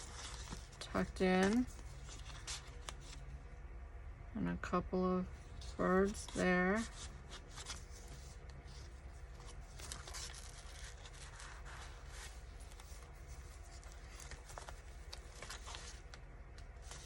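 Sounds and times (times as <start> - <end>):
paper pages rustling: 0.0 - 3.3, 5.6 - 17.0
steady low hum: 0.0 - 17.0.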